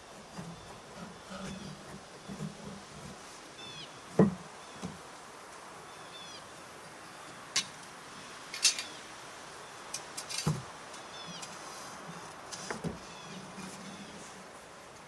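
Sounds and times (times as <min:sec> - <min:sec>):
small birds chirping: 0:03.6 - 0:04.0.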